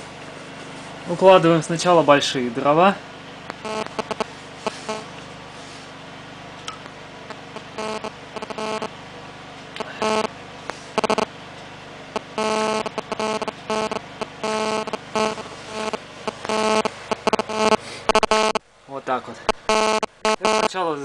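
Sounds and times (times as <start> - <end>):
electronic buzzing interference: 3.5 - 5.1, 7.3 - 8.9, 9.8 - 11.3, 12.1 - 18.7, 19.4 - 20.8.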